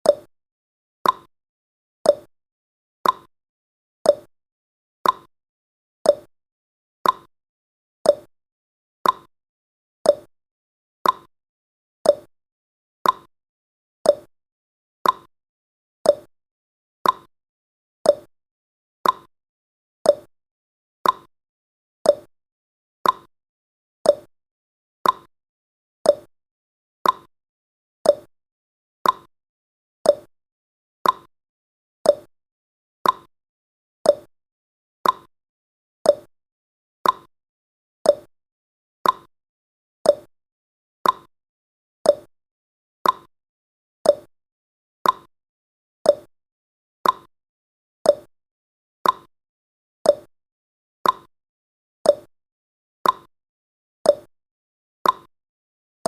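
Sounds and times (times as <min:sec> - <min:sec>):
clock ticking: 0:31.0 - 0:31.3, 0:35.0 - 0:35.3, 0:39.0 - 0:39.3, 0:41.0 - 0:41.3, 0:43.0 - 0:43.3, 0:47.0 - 0:47.3.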